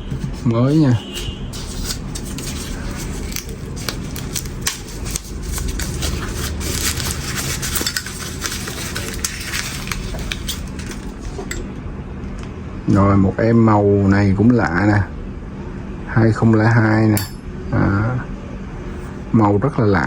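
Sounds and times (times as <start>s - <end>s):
packaging rustling: 0.2s - 11.5s
metal lighters clicking and clinking: 17.2s - 17.4s.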